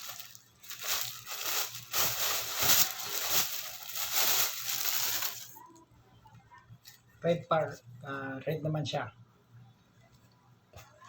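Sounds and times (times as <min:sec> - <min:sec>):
packaging rustling and crinkling: 0:00.0 - 0:05.6.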